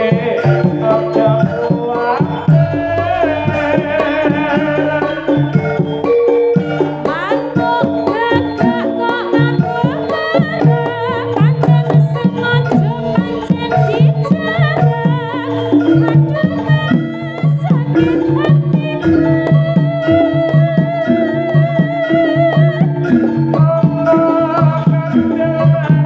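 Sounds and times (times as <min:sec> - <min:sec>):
gong-chime tones: 0:00.0 - 0:09.8
hand-drum strokes: 0:00.0 - 0:26.0
sliding wavering melody: 0:00.0 - 0:26.0.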